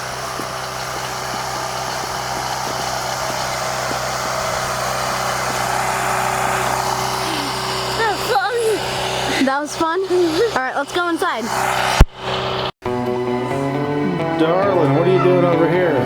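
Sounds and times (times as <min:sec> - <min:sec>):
machine hum: 0:00.0 - 0:12.7.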